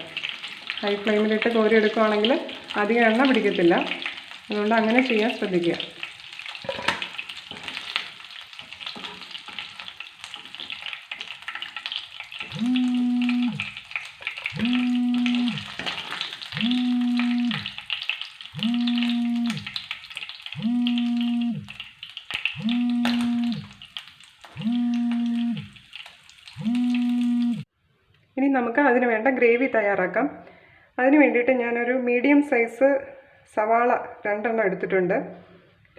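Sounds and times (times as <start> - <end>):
chicken sizzling in oil: 0.0 - 27.7.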